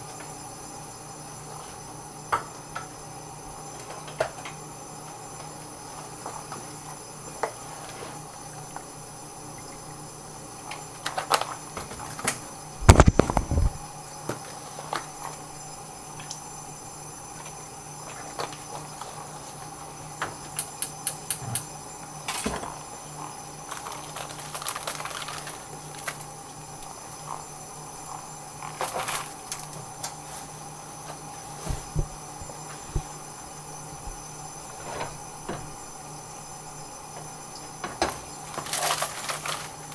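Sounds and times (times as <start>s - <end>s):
steady background hum: 0.0s - 39.9s
heavy thuds: 31.6s - 33.2s.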